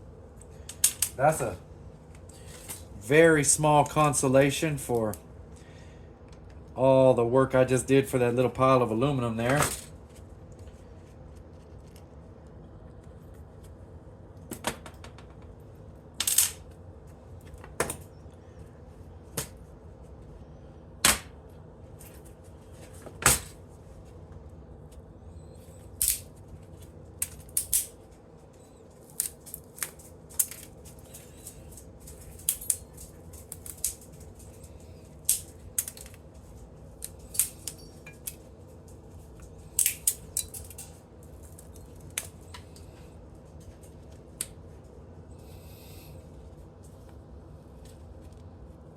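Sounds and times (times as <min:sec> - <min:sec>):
steady low hum: 0:00.0 - 0:48.9.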